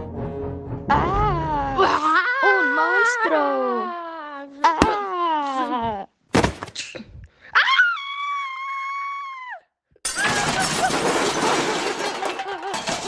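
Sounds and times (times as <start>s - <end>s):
glass shattering: 10.0s - 13.0s
glass pieces tinkling: 10.1s - 13.0s.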